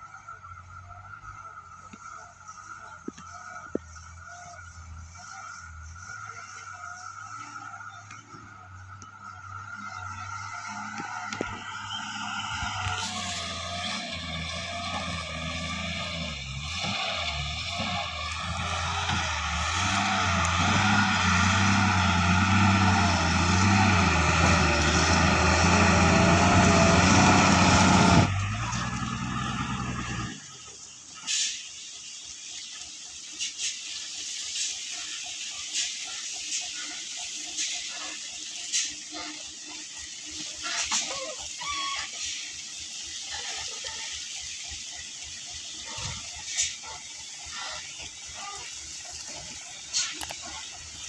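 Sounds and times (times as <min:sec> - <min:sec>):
outdoor noise hiss: 0:00.0 - 0:51.0
heavy truck engine under load: 0:08.1 - 0:30.8.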